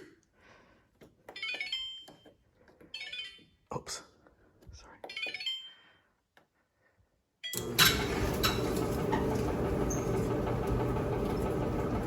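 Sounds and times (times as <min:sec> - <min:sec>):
dryer motor and drum hum: 0:07.6 - 0:12.0.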